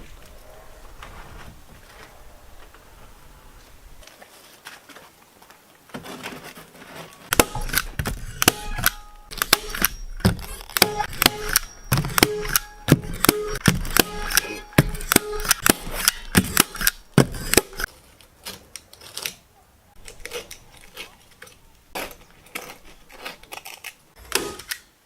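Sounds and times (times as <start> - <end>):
faint handling noise: 0.0 - 8.2
hammer driving nails into wood: 7.3 - 17.8.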